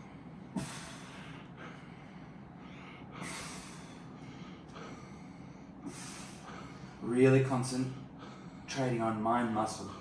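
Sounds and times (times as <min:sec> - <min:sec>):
person breathing hard: 0:00.0 - 0:07.0, 0:07.9 - 0:08.7
forceful exhales: 0:00.6 - 0:01.8, 0:03.2 - 0:05.1, 0:05.8 - 0:06.8.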